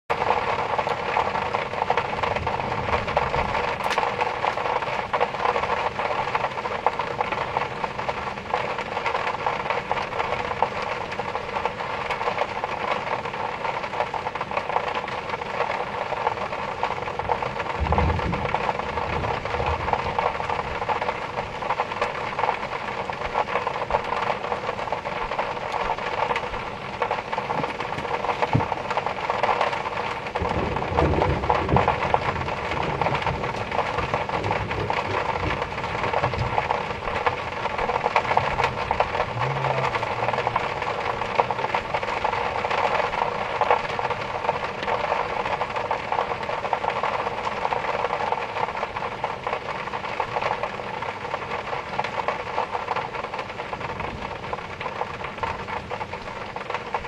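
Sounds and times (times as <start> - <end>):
heavy rain: 0.1 - 57.0
thunder rumbling: 0.4 - 7.6, 16.4 - 22.5, 24.0 - 44.7.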